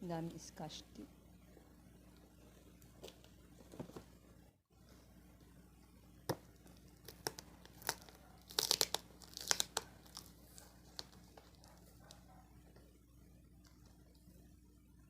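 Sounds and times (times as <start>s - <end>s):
plastic wrapping crinkling: 6.5s - 12.3s
tape ripping off: 6.9s - 11.6s.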